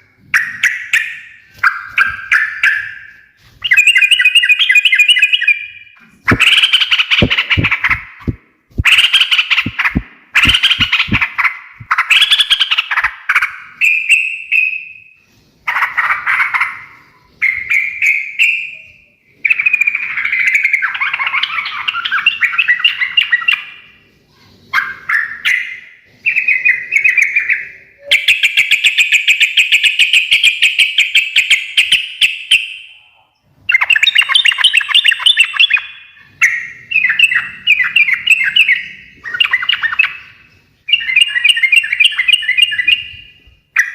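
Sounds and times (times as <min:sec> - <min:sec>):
bird singing chattering phrases: 0:06.3 - 0:13.1.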